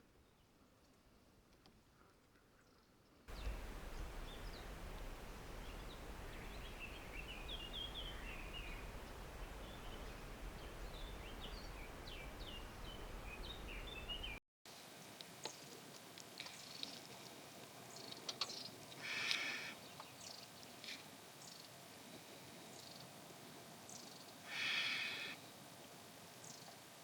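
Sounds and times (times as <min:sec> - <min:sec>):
low background rumble: 0:03.3 - 0:14.4.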